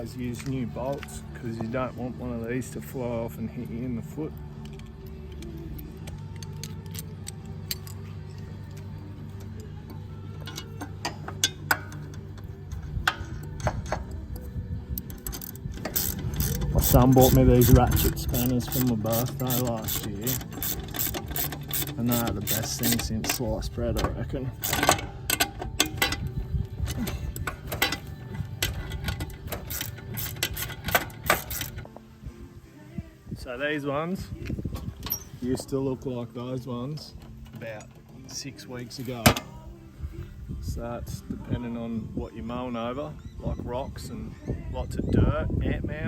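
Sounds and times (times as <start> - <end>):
metal clicks and taps of tools: 4.6 - 26.3, 26.9 - 32.0.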